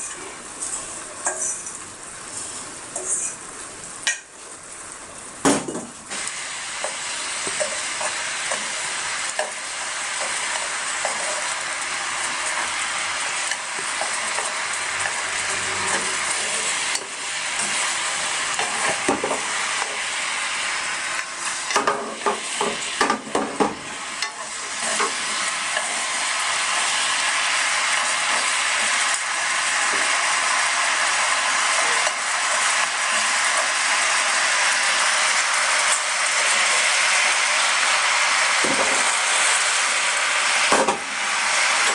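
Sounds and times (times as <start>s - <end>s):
chicken sizzling in a pan: 0.0s - 41.9s
utensil scraping a pan: 2.4s - 3.4s, 13.5s - 17.0s.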